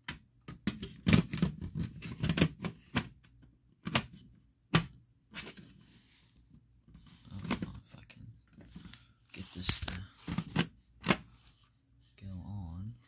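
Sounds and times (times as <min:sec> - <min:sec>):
plastic clicks and knocks: 0:00.0 - 0:05.0.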